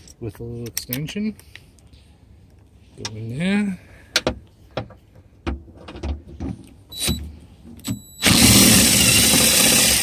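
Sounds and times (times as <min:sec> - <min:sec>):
small electric motor running: 0:08.2 - 0:10.0.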